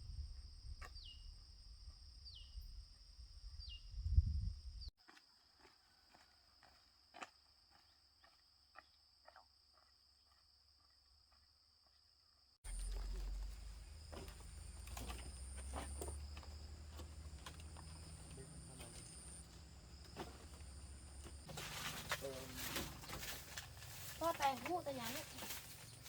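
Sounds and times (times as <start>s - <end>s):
wind on microphone: 3.4s - 4.9s
high insect drone: 12.7s - 26.0s.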